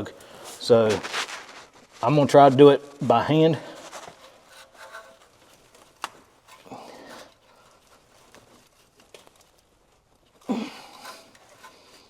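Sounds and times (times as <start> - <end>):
hands scraping and rubbing: 0.0 - 9.8.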